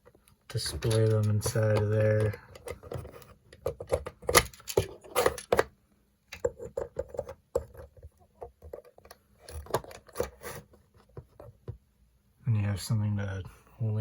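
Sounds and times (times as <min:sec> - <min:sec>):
plastic toys clicking and clattering: 0:00.5 - 0:05.7.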